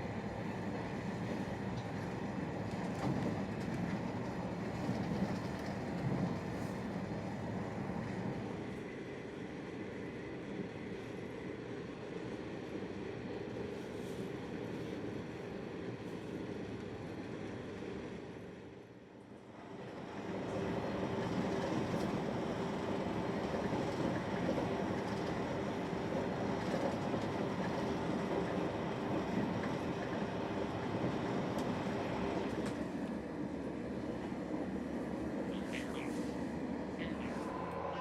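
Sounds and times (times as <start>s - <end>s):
train rumbling on rails: 0.0s - 38.0s.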